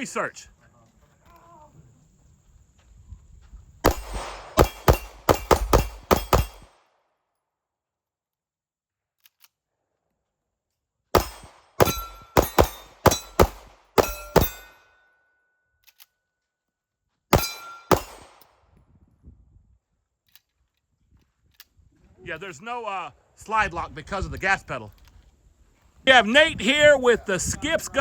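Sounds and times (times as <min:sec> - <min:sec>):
pistol firing rapid shots: 0:03.8 - 0:06.7, 0:11.2 - 0:14.7, 0:17.3 - 0:18.4.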